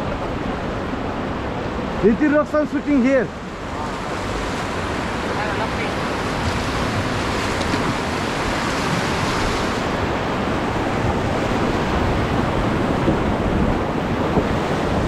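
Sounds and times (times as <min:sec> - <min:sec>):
river water rushing: 0:00.0 - 0:15.0
wind buffeting microphone: 0:06.1 - 0:15.0.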